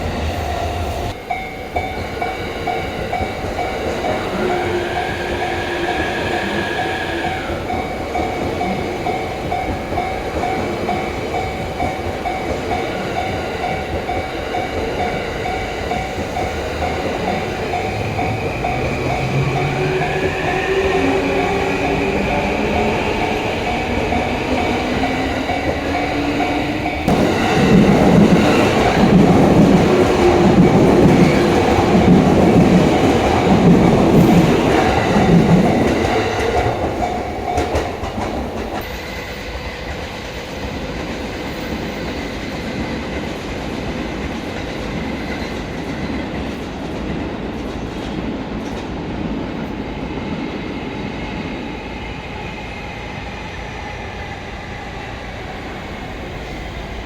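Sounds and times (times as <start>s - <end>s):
train rumble: 0.0s - 57.0s
train wheels clattering over rail joints: 7.6s - 38.8s.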